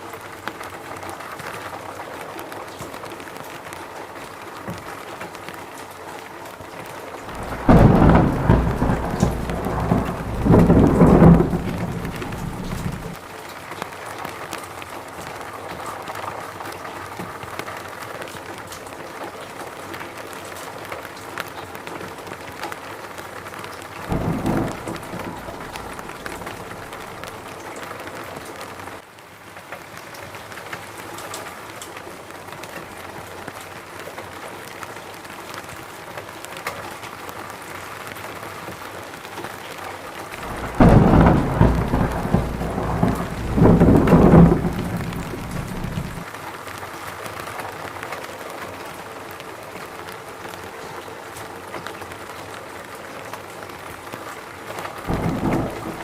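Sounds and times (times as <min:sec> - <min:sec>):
steady rain falling: 0:00.0 - 0:56.0
thunder rumbling: 0:07.3 - 0:13.2, 0:24.0 - 0:27.6, 0:40.4 - 0:46.2, 0:55.1 - 0:56.0.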